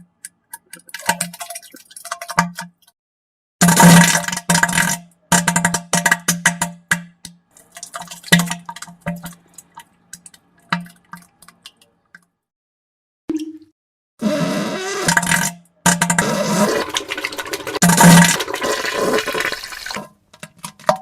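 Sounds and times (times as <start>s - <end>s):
wet sputtering fart: 14.2s - 20.0s.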